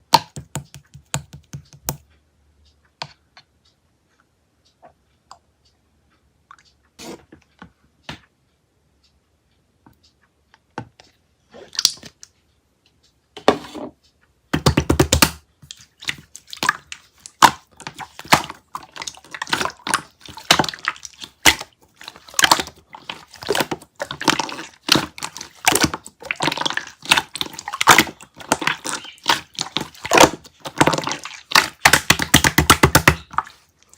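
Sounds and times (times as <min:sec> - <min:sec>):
slime crackling and popping: 0:16.0 - 0:33.6.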